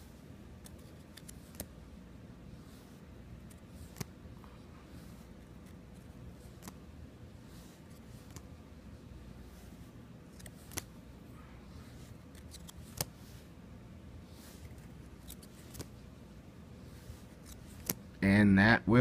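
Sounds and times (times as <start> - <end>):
steady low hum: 0.0 - 19.0
cards tapping and sliding: 0.6 - 1.8, 2.6 - 4.2, 4.8 - 6.9, 7.5 - 8.6, 9.4 - 11.0, 11.8 - 13.5, 14.3 - 16.0, 16.9 - 18.2.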